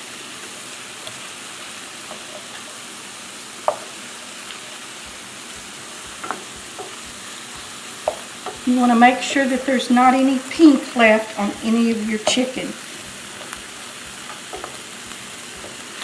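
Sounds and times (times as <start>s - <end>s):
food sizzling in oil: 0.0s - 16.0s
spoon knocking against pan: 5.0s - 16.0s.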